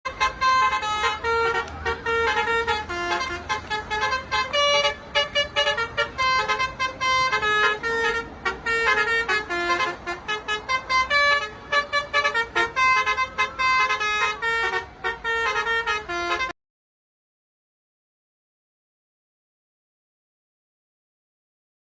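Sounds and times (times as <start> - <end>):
musical air horns playing tune: 0.1 - 16.6.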